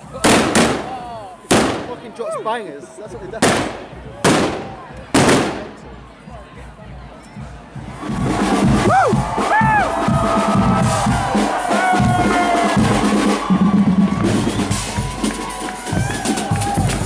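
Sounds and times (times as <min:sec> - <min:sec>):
bass and snare drumming: 0:00.2 - 0:01.9, 0:03.4 - 0:05.9, 0:07.6 - 0:17.0
marching band sliding notes: 0:07.4 - 0:17.0.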